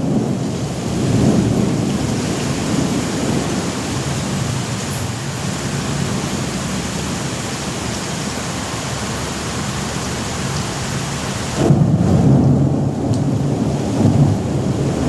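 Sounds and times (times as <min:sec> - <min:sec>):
thunder rumbling: 0:00.0 - 0:08.0, 0:11.5 - 0:15.0
rain hiss: 0:00.0 - 0:15.0.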